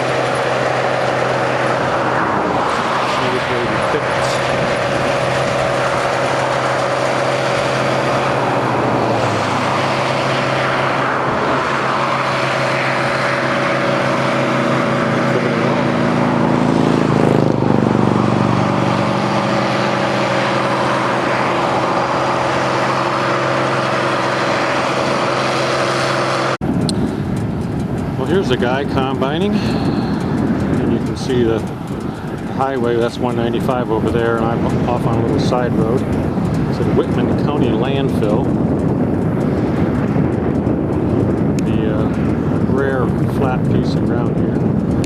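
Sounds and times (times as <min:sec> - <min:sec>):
car engine hum: 0:00.0 - 0:45.0
tyre and wind rush: 0:00.0 - 0:45.0.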